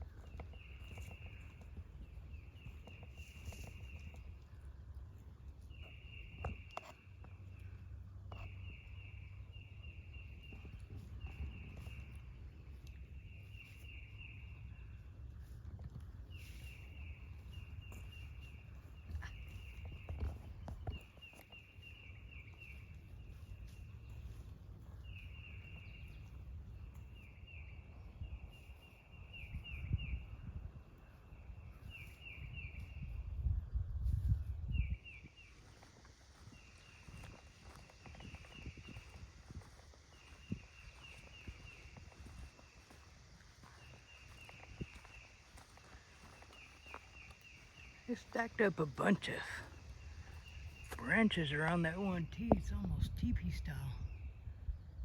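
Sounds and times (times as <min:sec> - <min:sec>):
low wind rumble: 0:07.3 - 0:55.0
footsteps: 0:35.4 - 0:52.8.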